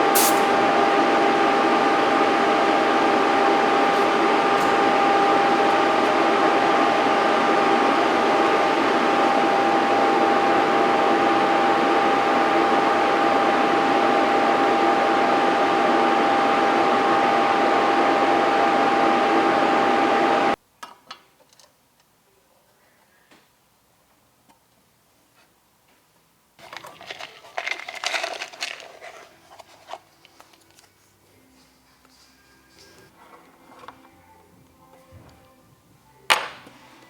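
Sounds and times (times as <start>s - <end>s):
uneven hissing: 0.0s - 0.7s, 1.7s - 15.6s
blower machine whining: 0.0s - 20.6s.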